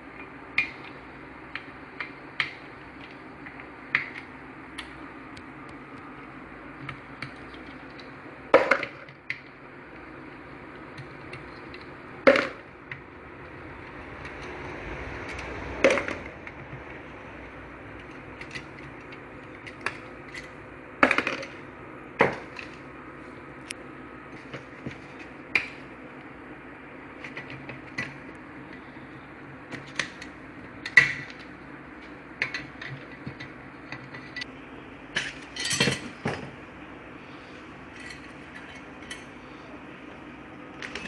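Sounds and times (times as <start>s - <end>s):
hand tools and metal parts clinking: 35.1s - 36.5s, 37.9s - 39.4s.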